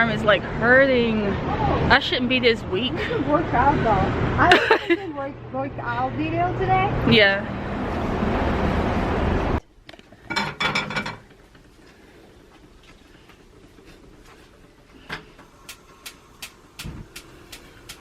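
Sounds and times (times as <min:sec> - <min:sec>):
street traffic noise: 0:00.0 - 0:09.7.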